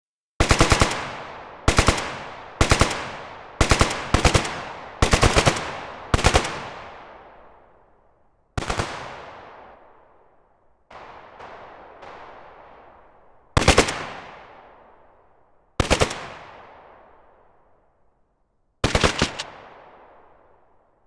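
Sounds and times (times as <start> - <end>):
automatic gunfire bursts with echo: 0.4 - 7.1, 13.6 - 14.6, 15.8 - 16.8, 18.8 - 20.0.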